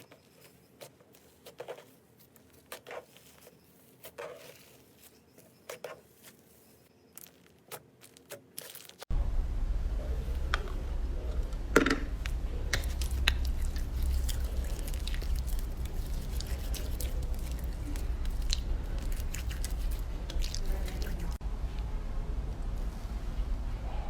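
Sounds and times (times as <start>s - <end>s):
steady low rumble: 9.1s - 24.0s.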